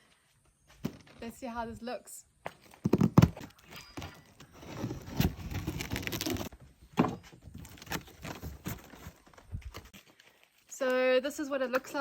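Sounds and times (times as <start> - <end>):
cardboard rustling: 4.2 - 6.6, 7.4 - 10.2.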